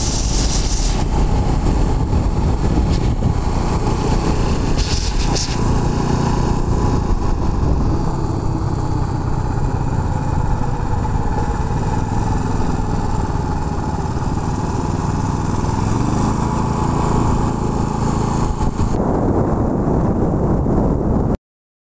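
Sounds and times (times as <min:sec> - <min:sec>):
high hiss: 0:00.0 - 0:01.1, 0:04.8 - 0:05.8
small generator engine running: 0:00.0 - 0:19.0.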